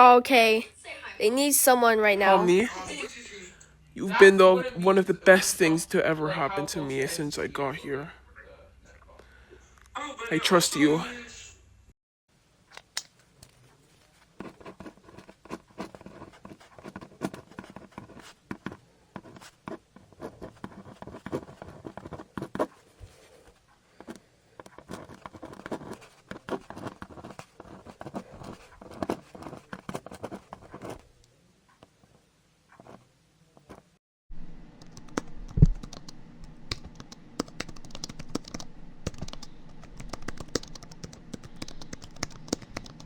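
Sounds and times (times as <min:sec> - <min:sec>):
faint scratching and clicking: 0:13.2 - 0:34.0, 0:34.8 - 0:43.0.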